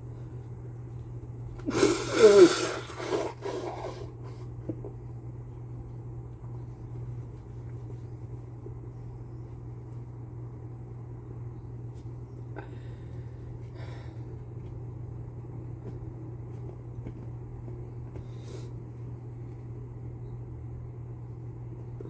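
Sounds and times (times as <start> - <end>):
person sneezing: 1.6 - 4.1
noisy breath: 1.6 - 4.5, 12.5 - 14.4, 18.2 - 18.8.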